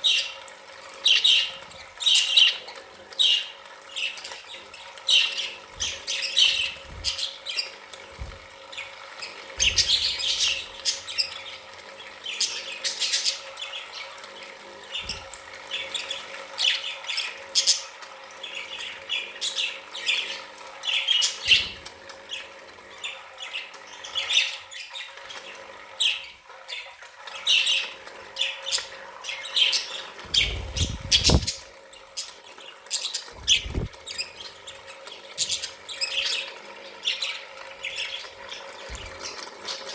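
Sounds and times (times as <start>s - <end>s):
budgerigars chattering: 9.6s - 11.4s, 28.4s - 31.6s, 33.0s - 34.4s.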